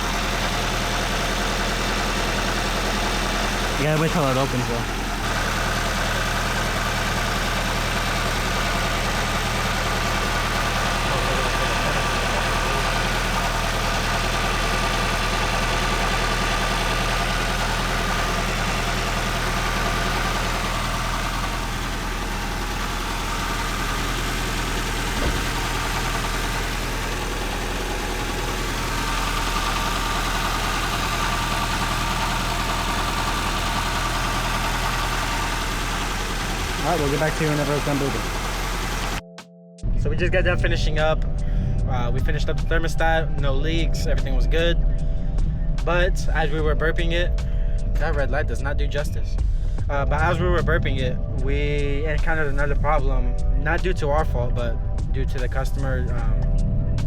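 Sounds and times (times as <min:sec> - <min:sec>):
car engine idling: 0:00.0 - 0:39.2, 0:40.7 - 0:57.0.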